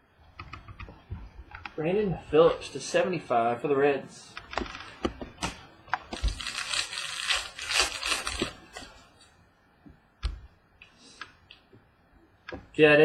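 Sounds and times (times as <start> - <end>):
packaging crinkling and rustling: 4.6 - 9.3.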